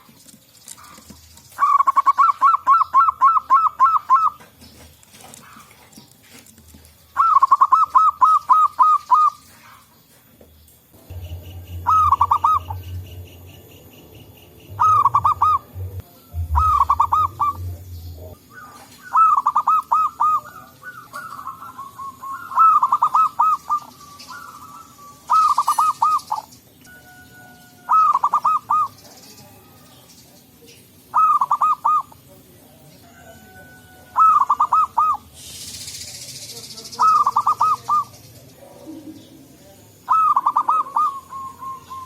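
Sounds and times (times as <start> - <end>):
doves cooing: 0.0 - 10.4, 11.0 - 30.0, 31.0 - 32.3, 33.1 - 35.6, 36.9 - 42.0
low rumble: 11.0 - 18.4.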